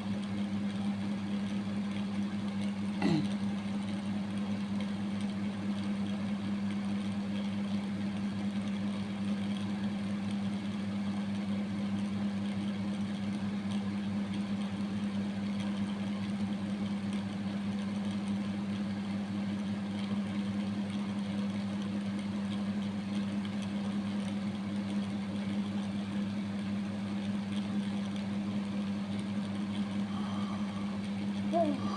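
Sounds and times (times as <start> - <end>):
motor humming: 22.2 - 31.9.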